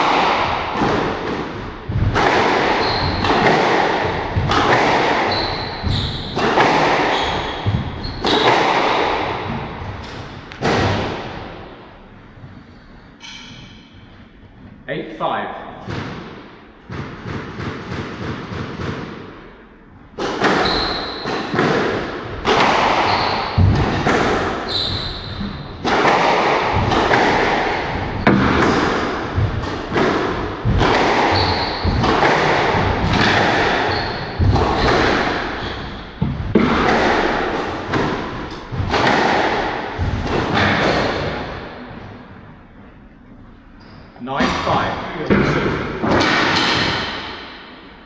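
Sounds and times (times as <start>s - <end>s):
squash ball hits: 0.0s - 11.8s, 15.8s - 42.3s, 44.4s - 48.0s
shoe squeaks: 2.8s - 3.4s, 5.3s - 8.6s, 20.5s - 21.4s, 23.1s - 23.6s, 24.6s - 25.7s, 31.3s - 32.1s, 33.2s - 34.9s.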